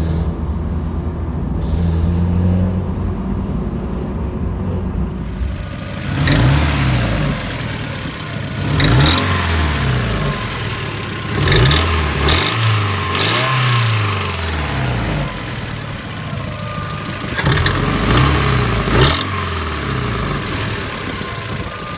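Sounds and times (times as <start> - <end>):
car engine revving: 1.7 - 21.9
short harsh engine noises: 5.0 - 21.9.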